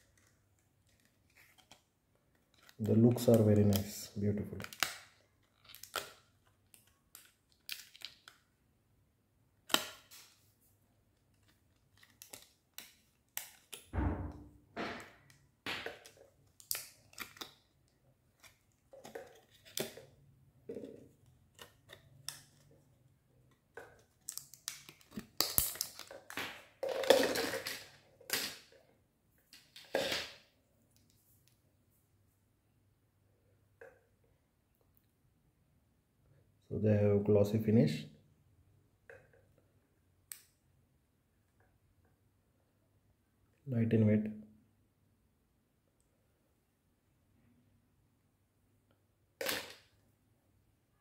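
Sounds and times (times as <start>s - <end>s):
dull thump: 14.0s - 15.0s.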